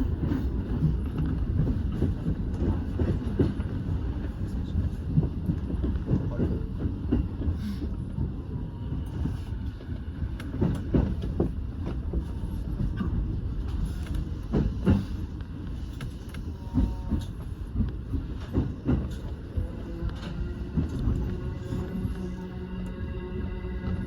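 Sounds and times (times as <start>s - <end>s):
train wheels rumbling on rail: 0.0s - 24.0s.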